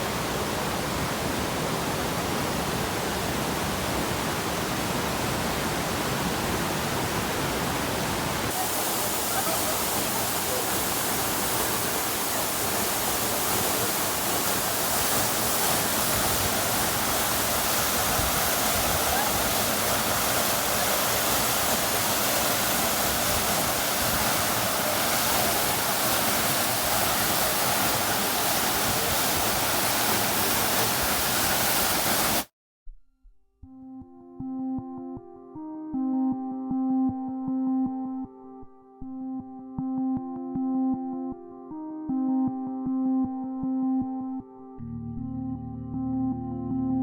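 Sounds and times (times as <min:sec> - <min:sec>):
waterfall rushing: 0:00.0 - 0:32.5.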